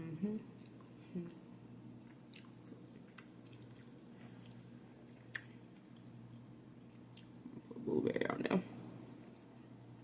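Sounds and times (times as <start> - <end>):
chewing salad: 0.4 - 7.7, 9.2 - 9.8.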